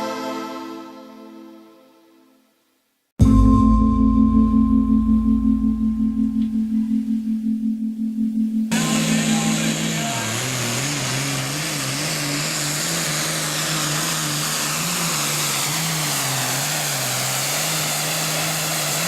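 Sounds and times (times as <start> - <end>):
loud hiss: 8.7 - 19.0
tractor diesel engine running hard: 8.7 - 19.0.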